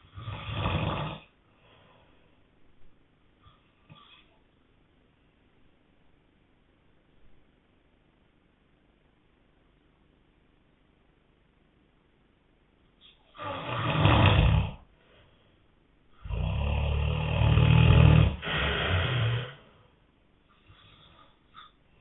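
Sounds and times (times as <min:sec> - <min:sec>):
man snoring loudly: 0:00.0 - 0:01.3, 0:13.4 - 0:14.8, 0:16.2 - 0:19.7.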